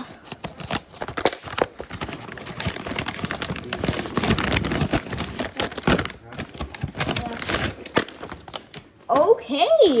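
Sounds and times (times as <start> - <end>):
packaging crinkling and rustling: 0.0 - 9.4.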